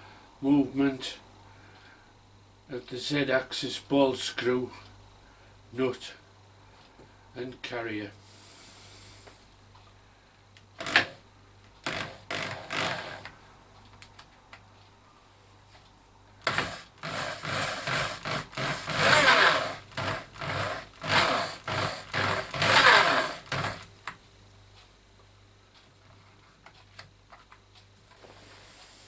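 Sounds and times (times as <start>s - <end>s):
drill spinning a screw: 10.8s - 11.2s, 11.8s - 13.3s, 16.4s - 23.9s.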